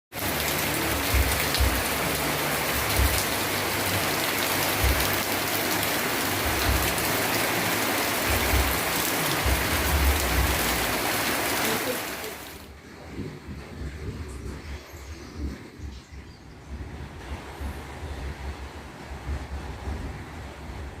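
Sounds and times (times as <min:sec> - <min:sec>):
steady rain falling: 0:00.1 - 0:14.8.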